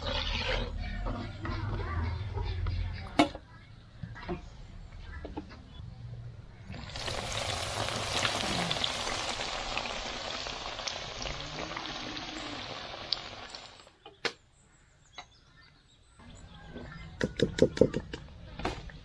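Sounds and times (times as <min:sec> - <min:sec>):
food sizzling in a pan: 0:06.8 - 0:13.9.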